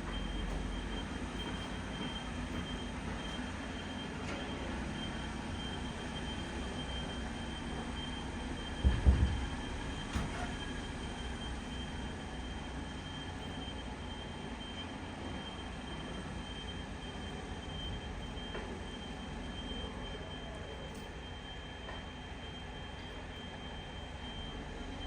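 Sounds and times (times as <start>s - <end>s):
heavy machinery rumble: 8.6s - 11.2s
loud deep thumps: 8.8s - 9.5s.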